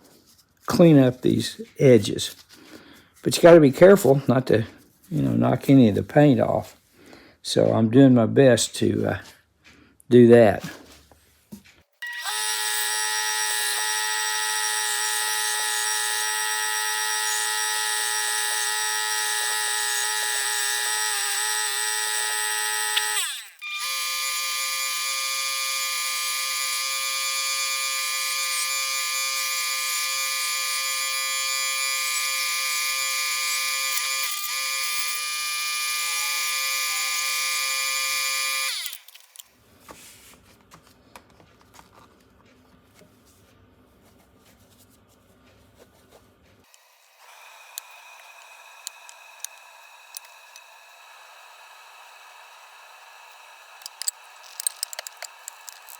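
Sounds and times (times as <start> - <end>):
wire wheel tool whining: 12.0 - 39.5, 46.7 - 55.9.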